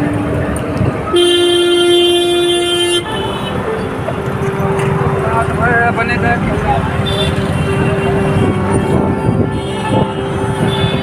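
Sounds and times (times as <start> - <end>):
vehicle horn blast: 1.1 - 3.5.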